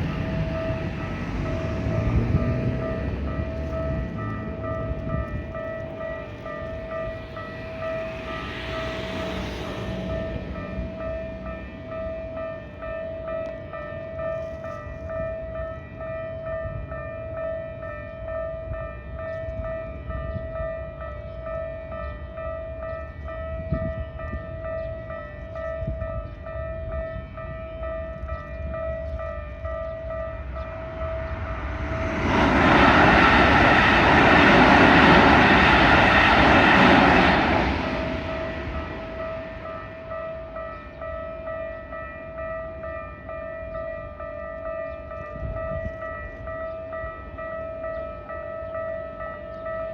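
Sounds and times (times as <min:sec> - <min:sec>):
level-crossing warning bell: 0:00.0 - 0:49.9
train passing: 0:00.0 - 0:49.9.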